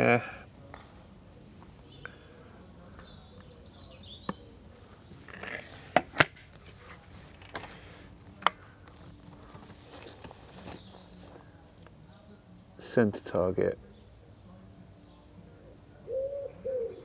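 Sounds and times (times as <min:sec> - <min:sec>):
faint bird chirps: 0:01.7 - 0:05.8, 0:13.8 - 0:17.0
air rifle clicks and cracks: 0:05.3 - 0:06.7, 0:07.3 - 0:10.8.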